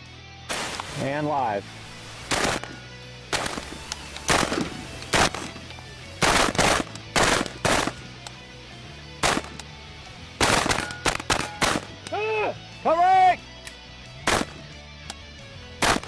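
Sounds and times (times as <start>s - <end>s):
handgun shots: 2.3s - 5.6s, 6.2s - 8.0s, 9.2s - 9.7s, 10.4s - 12.1s, 14.2s - 14.6s, 15.8s - 16.0s.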